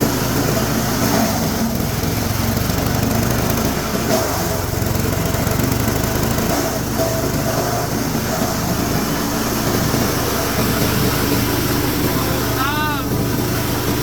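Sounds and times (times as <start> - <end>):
wood chipper grinding: 0.0 - 14.0.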